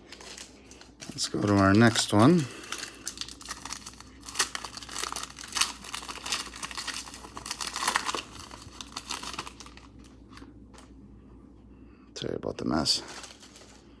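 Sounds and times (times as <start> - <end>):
wrapper tearing and crinkling: 0.0 - 10.4, 13.0 - 14.0.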